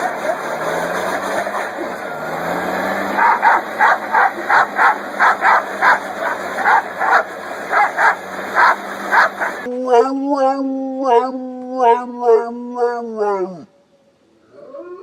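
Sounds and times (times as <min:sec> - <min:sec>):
dog barking: 0:03.2 - 0:09.7.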